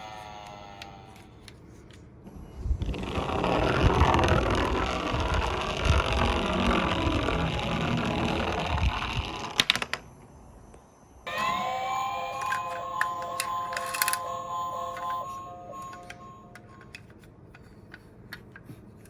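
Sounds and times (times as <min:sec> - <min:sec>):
toy car rolling and rattling: 0:02.8 - 0:10.0, 0:12.0 - 0:18.6
toy car clacking: 0:11.4 - 0:18.6.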